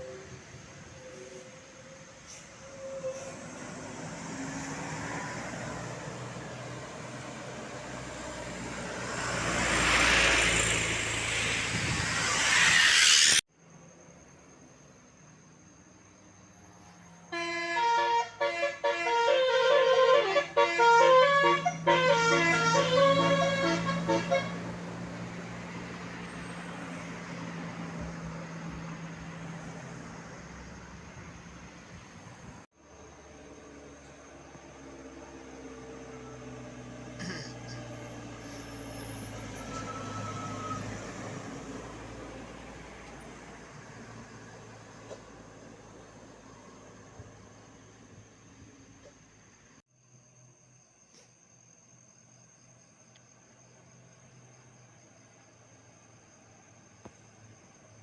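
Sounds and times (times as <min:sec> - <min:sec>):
bus engine humming: 0:00.0 - 0:13.5, 0:17.0 - 0:49.8
road vehicles driving past: 0:00.0 - 0:49.8.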